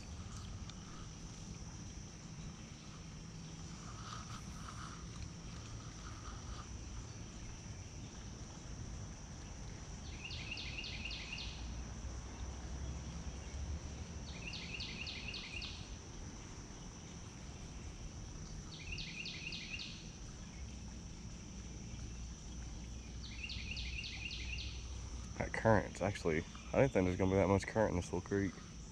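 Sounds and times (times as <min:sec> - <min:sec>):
high insect drone: 0:00.0 - 0:28.9.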